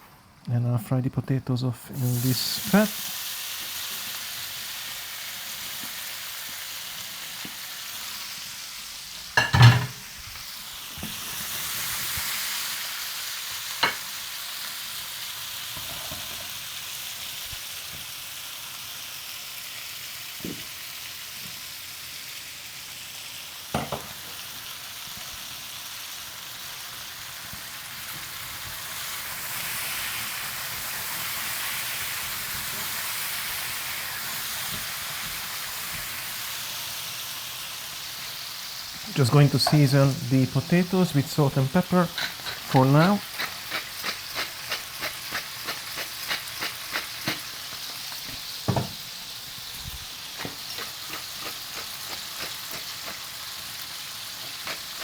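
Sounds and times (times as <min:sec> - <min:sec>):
food sizzling in a frying pan: 0:01.9 - 0:55.0.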